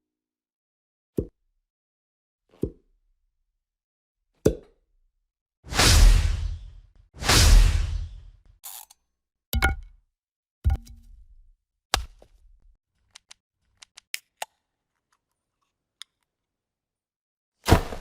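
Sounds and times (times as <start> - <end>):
sharp hit: 5.7 - 8.3.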